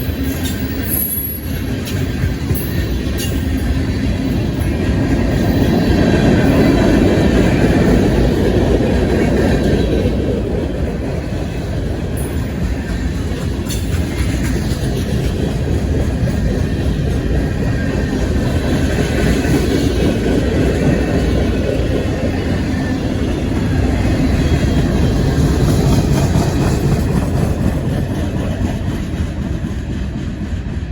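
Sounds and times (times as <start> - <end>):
train wheels rumbling on rail: 0.0 - 30.9.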